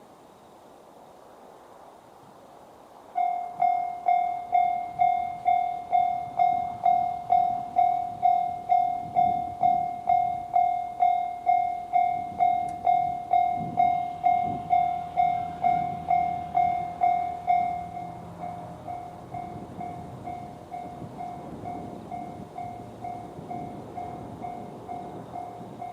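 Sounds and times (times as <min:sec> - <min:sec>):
diesel railcar rumble: 0:03.0 - 0:25.9
level crossing alarm dinging: 0:03.2 - 0:25.9.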